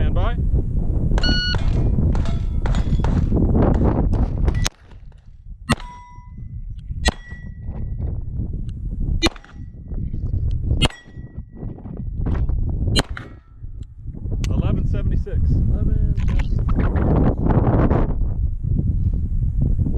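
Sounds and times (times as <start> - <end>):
bullet ringing on steel plate: 1.2 - 3.2, 5.7 - 8.0, 9.2 - 9.8, 10.8 - 11.5
pistol shots: 4.2 - 6.2, 7.1 - 7.5, 9.2 - 9.7, 10.8 - 11.3, 13.0 - 13.5.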